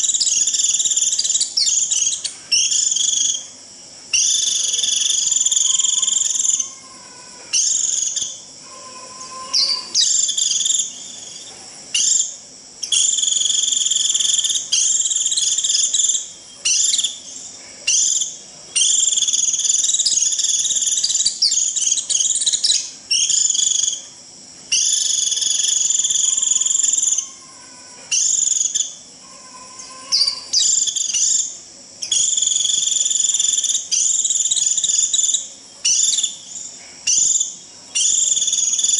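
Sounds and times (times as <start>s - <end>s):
white-eye shrill buzzy call: 0.0s - 11.1s, 24.7s - 38.9s.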